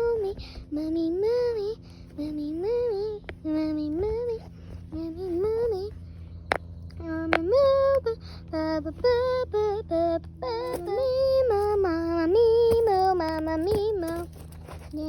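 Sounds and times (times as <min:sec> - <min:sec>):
girl singing wordless tune: 0:00.0 - 0:15.0.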